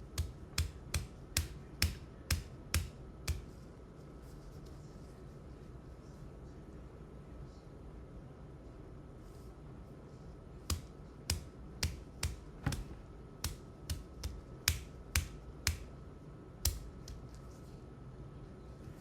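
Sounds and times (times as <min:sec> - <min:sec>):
fingers tapping plastic syringe: 0:00.0 - 0:03.5, 0:13.4 - 0:15.9.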